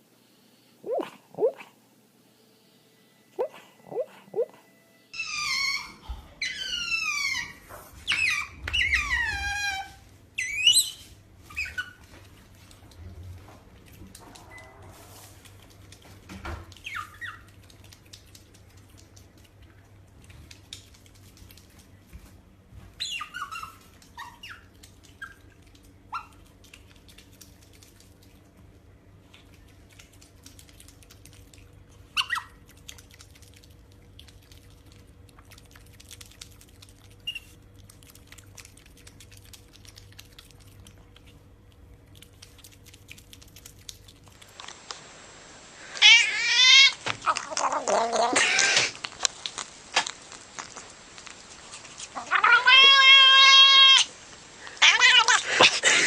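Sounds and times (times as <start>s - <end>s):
faint steady hum: 0.0s - 56.0s
small animal squeaking: 5.2s - 12.0s, 16.7s - 17.5s, 23.0s - 25.4s, 37.1s - 37.6s.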